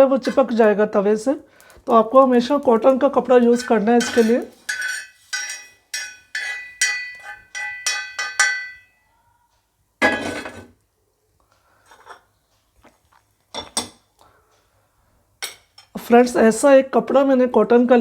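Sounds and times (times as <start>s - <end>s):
cookware clattering: 3.4s - 9.0s, 10.0s - 10.8s, 13.5s - 14.1s, 15.4s - 16.0s
metal spoon clinking on steel pot: 3.4s - 9.0s, 15.4s - 16.0s
faint scrapes and taps: 11.4s - 13.2s.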